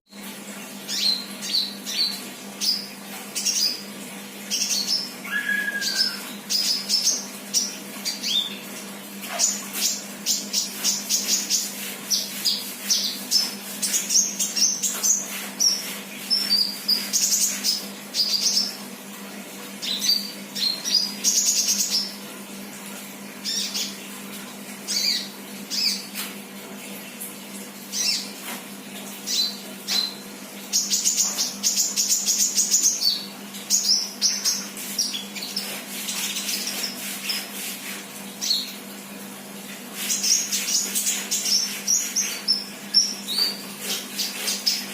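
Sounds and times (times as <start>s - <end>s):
bird high-pitched chirping song: 4.5s - 8.6s.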